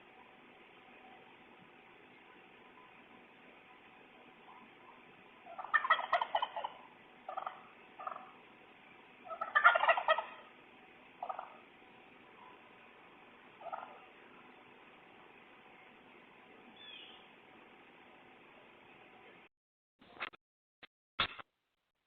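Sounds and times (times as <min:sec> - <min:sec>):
animal making warbling calls: 0:05.5 - 0:08.4, 0:09.3 - 0:10.4.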